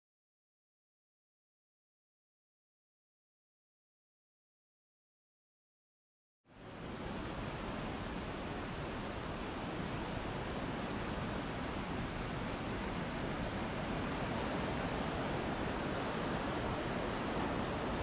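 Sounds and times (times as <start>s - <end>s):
stream water rushing: 6.6s - 18.0s.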